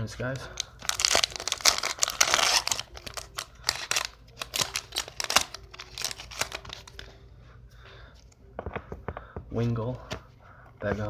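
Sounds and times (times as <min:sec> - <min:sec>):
foil wrapper crinkling and tearing: 0:00.3 - 0:07.1
crinkles and clicks of cards: 0:00.3 - 0:07.2.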